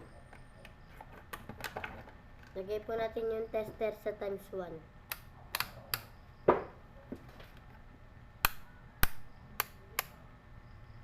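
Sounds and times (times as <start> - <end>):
dull knock of handling: 6.5 - 6.8.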